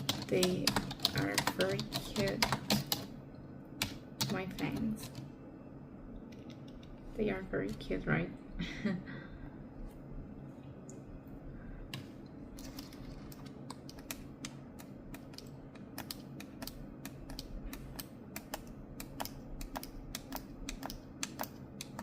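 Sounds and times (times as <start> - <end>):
keyboard keys tapped with fingernails: 0.0 - 3.1, 11.9 - 22.0.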